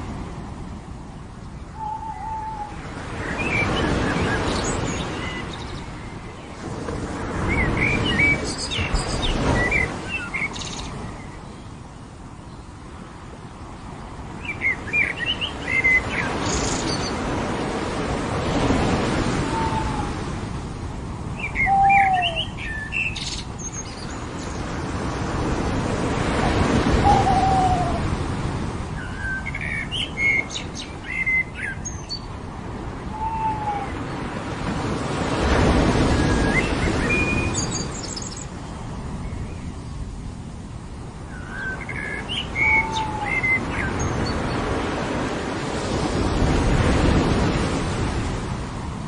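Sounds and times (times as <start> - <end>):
ocean waves washing onto beach: 0.0 - 49.0
birds chirping: 21.4 - 24.8, 41.3 - 44.9.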